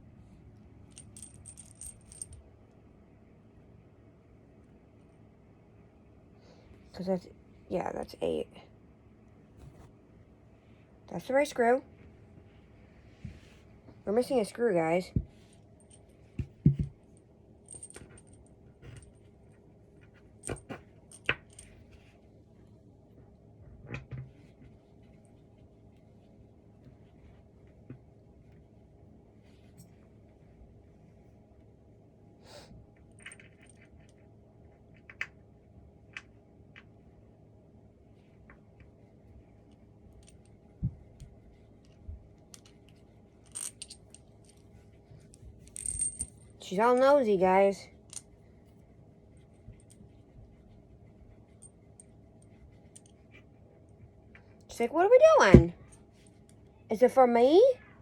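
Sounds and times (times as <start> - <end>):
metal screws clinking: 43.4 - 44.6.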